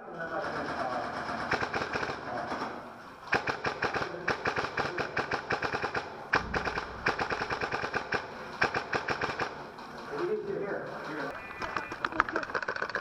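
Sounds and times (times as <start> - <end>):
airsoft rifle bursts: 3.3 - 9.8.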